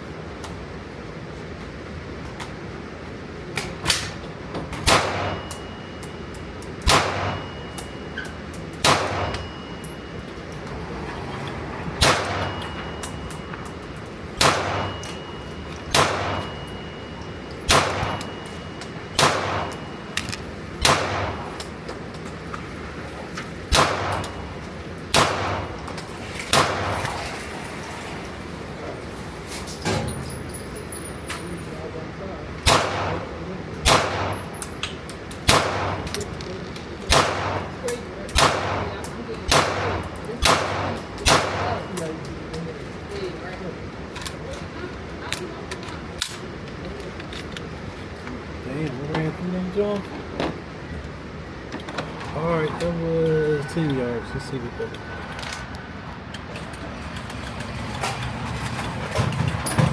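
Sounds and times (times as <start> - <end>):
handgun shots with ringing echo: 4.8 - 5.6, 6.8 - 7.9, 8.8 - 9.6, 12.0 - 13.4, 14.4 - 15.2, 15.9 - 16.8, 17.7 - 18.6, 19.2 - 20.0, 20.8 - 21.6, 23.7 - 24.5, 25.1 - 25.8, 26.5 - 27.0, 32.6 - 34.7, 35.4 - 36.3, 37.1 - 42.0.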